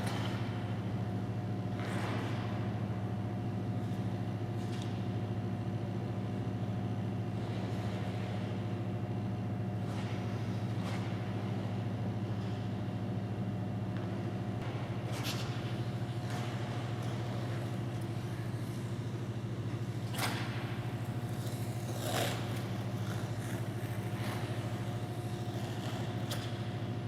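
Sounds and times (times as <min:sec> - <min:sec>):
skate blades scraping ice: 0:15.0 - 0:26.9.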